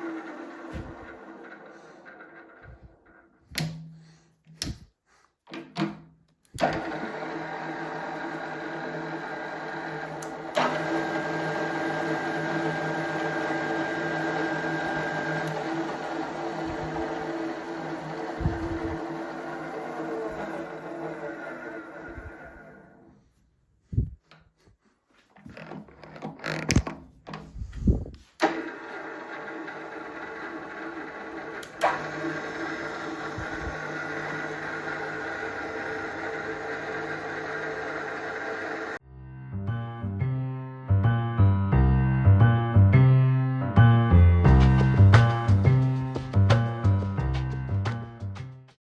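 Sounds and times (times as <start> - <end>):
drill press gearbox humming: 0.0 - 3.8, 6.6 - 23.1, 28.4 - 39.0.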